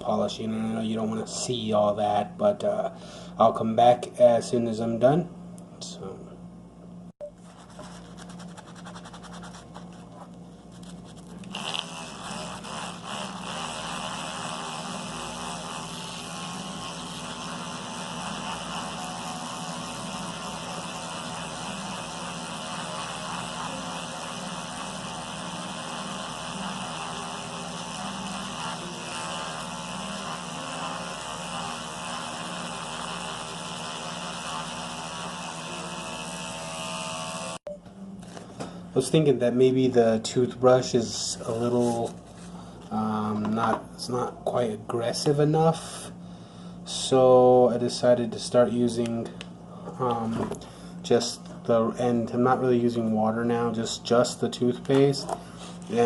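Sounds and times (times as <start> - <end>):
electric toothbrush buzzing: 10.8 - 37.7, 55.8 - 56.0.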